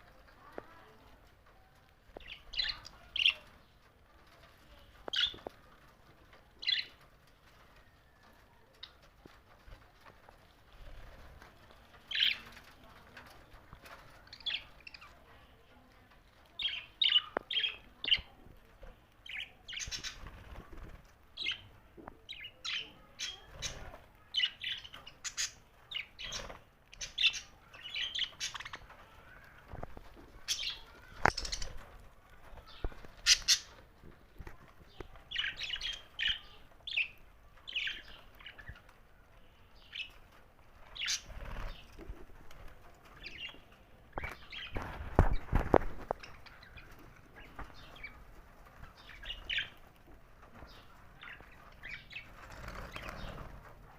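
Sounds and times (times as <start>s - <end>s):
budgerigars chirping and squawking: 32.6s - 33.8s.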